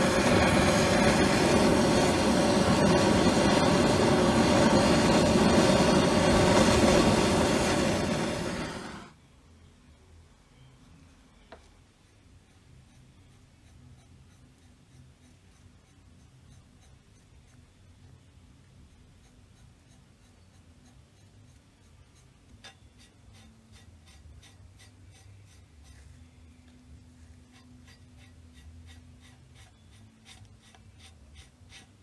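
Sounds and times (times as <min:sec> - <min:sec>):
faint scratching and rubbing: 0:19.0 - 0:32.0.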